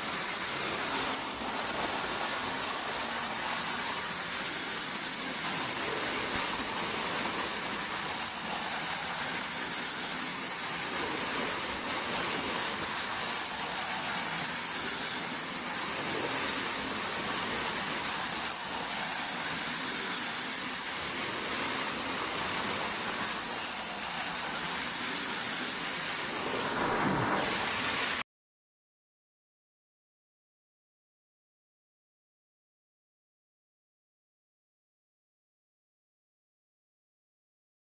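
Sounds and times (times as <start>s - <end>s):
toy train whirring and rattling: 0.0s - 28.2s.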